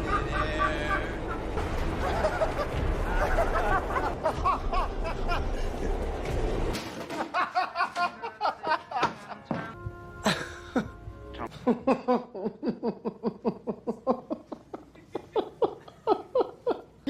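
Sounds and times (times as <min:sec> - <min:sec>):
people talking: 0:00.1 - 0:01.2.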